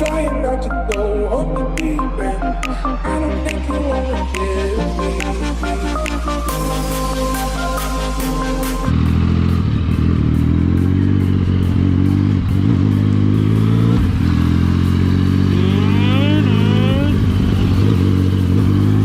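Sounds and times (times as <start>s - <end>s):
motorcycle engine running: 8.4s - 19.0s
rising whine: 15.4s - 19.0s.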